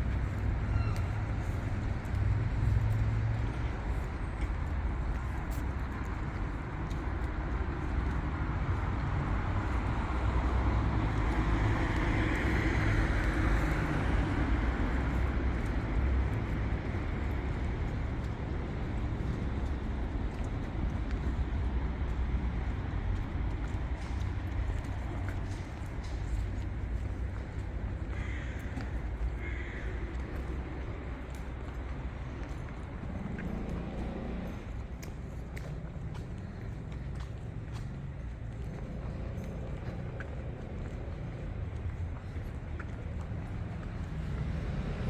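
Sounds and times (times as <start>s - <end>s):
road traffic noise: 0.0s - 45.0s
vehicle passing: 31.8s - 45.0s.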